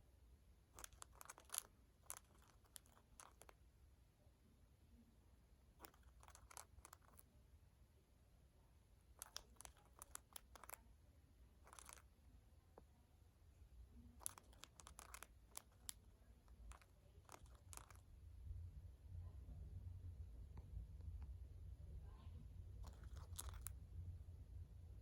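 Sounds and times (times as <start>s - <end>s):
soft clicks and crunches: 14.2s - 18.0s, 22.8s - 23.8s.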